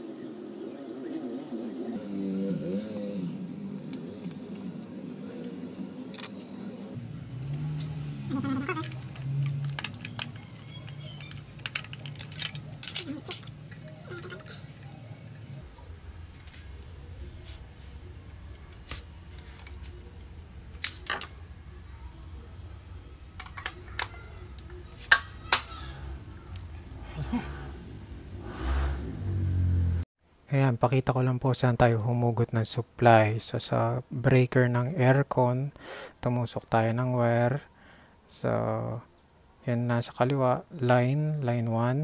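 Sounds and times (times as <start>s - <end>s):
low steady hum: 0.0s - 35.6s
small hardware clicking and clinking: 8.8s - 15.5s.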